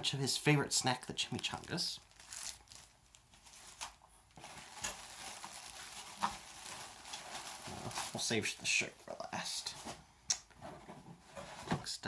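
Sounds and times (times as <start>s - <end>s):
packaging rustling: 1.2s - 8.8s.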